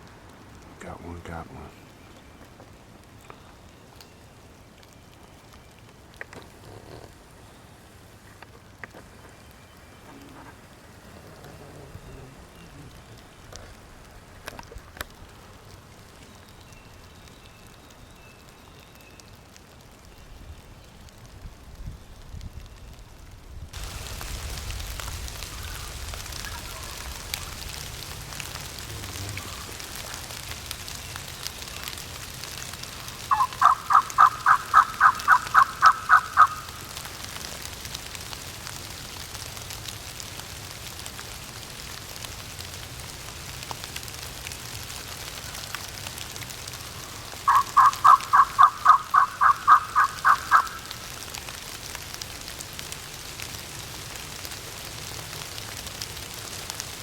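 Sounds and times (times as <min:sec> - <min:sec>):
steady background hiss: 0:00.0 - 0:22.0, 0:23.8 - 0:57.0
turkey yelps: 0:33.3 - 0:36.8, 0:47.5 - 0:50.9.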